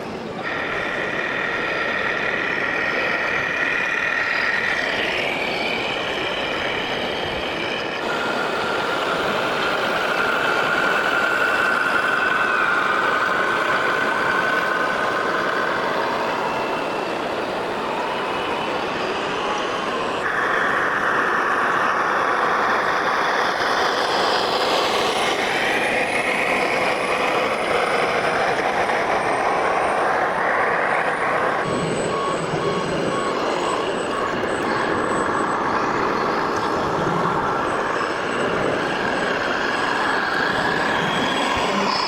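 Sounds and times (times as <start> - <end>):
model truck motor whine: 0.0 - 42.0.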